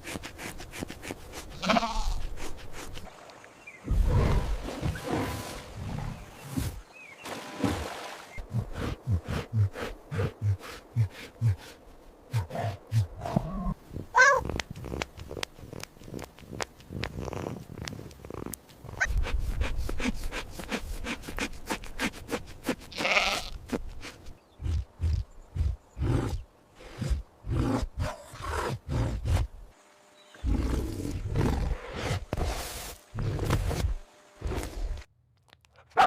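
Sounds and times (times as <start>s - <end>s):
higher bleats: 1.6s - 2.2s, 22.9s - 23.6s
low grunting: 8.4s - 15.4s.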